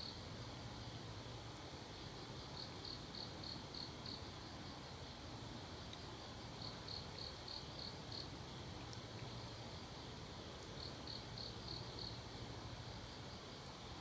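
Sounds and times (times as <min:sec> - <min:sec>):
cricket chirping: 0:02.5 - 0:04.6, 0:06.5 - 0:08.3, 0:10.8 - 0:12.2.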